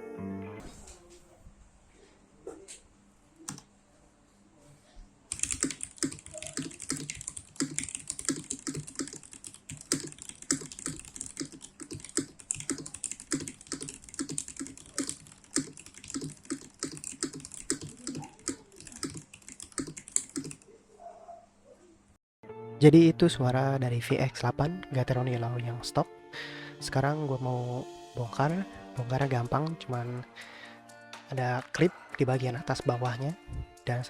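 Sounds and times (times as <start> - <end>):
mechanical keyboard typing: 5.3 - 20.6.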